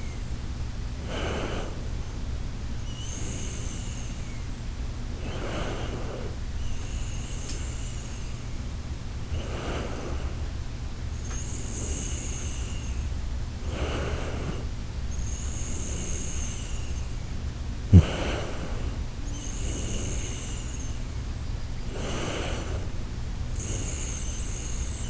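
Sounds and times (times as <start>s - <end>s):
whistling nasal breath: 0.0s - 25.0s
dog snoring: 17.9s - 21.0s.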